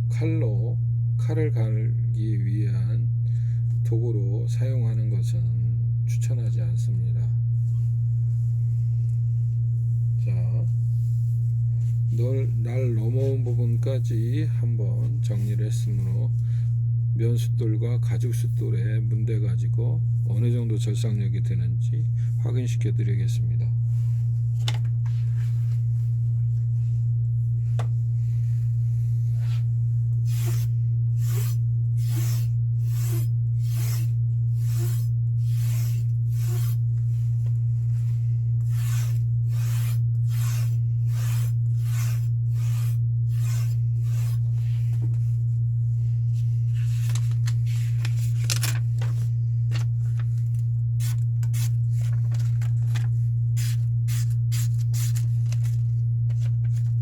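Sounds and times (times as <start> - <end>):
knife rasping on spinning wheel: 30.2 - 36.9, 38.6 - 44.4.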